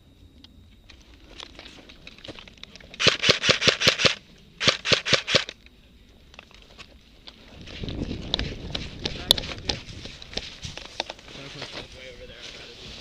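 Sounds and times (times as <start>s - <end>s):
airsoft gun firing: 3.0s - 5.6s.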